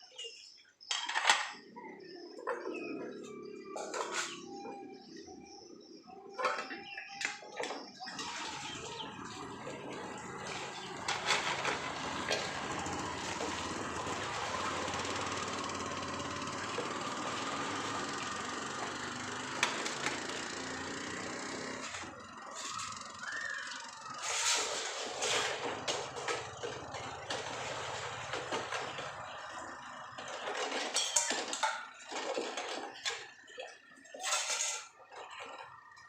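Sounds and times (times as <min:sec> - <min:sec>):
dishes clinking: 0:30.6 - 0:31.9.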